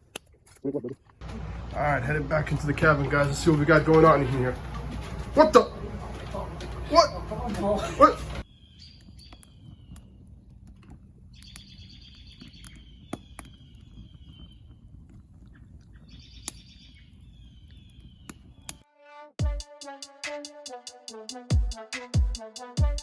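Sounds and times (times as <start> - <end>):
songbird trilling: 11.4 - 14.6
music with a strong beat: 19.4 - 23.0.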